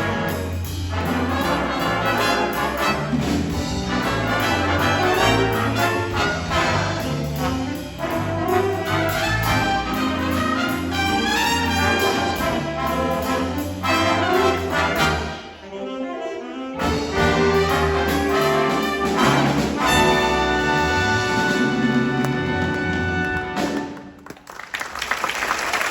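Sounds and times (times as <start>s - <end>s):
jazz band playing: 0.0s - 24.2s
trumpets and trombones: 0.0s - 24.2s.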